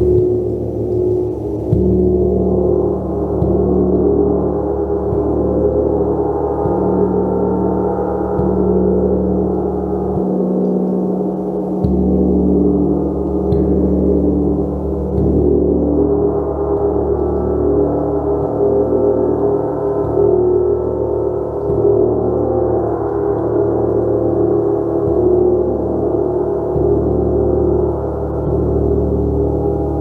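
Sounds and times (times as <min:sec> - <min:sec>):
gong strikes with deep hum: 0:00.0 - 0:30.0.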